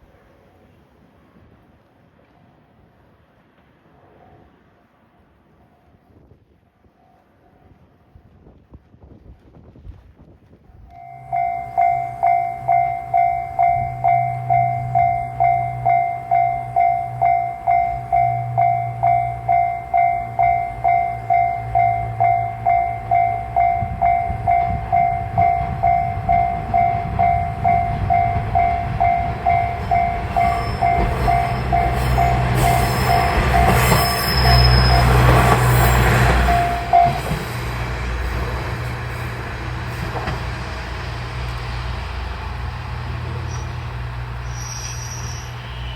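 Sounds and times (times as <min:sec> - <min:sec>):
diesel train engine rumble: 0:10.9 - 0:45.9
level-crossing alarm bell: 0:11.0 - 0:39.3.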